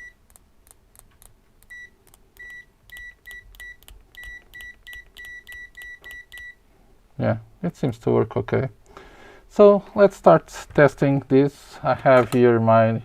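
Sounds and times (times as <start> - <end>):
multimeter continuity beeps: 0.0 - 0.2, 1.6 - 6.6.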